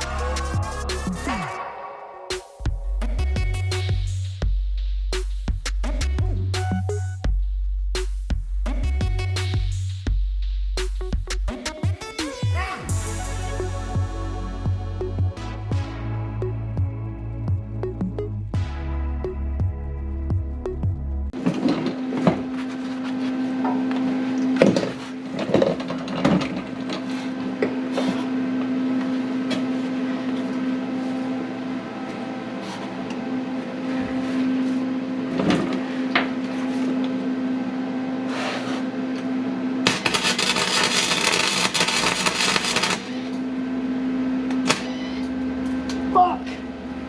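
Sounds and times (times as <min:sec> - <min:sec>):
welding arc noise: 0:39.8 - 0:43.3
welder humming: 0:39.8 - 0:43.4.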